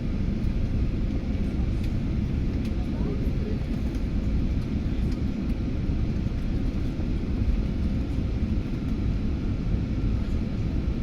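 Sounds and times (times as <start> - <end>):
airliner low rumble: 0.0 - 11.0.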